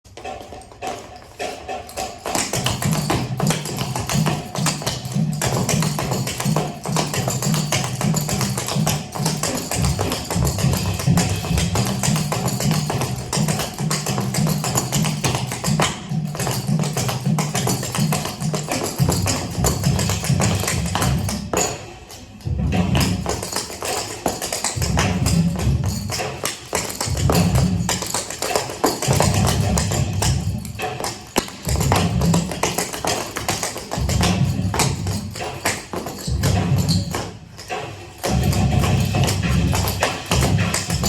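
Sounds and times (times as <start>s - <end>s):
quick percussive tapping: 0.1s - 41.0s.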